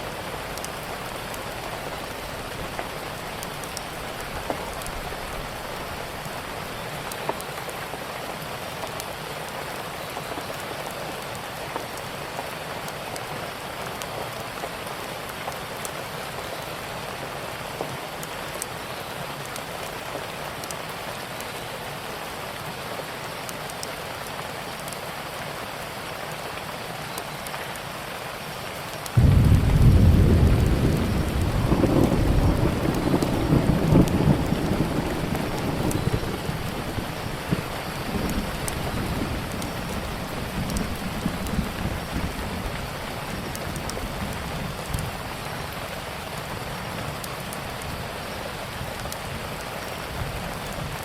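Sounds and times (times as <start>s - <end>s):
fire crackling: 0.0s - 7.4s, 29.2s - 45.9s
heavy rain: 0.0s - 51.0s.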